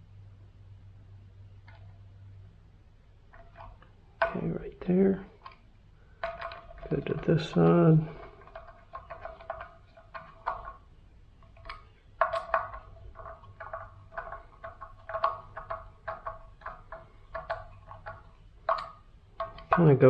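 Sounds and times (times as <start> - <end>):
metallic clicks and taps: 11.4 - 20.0.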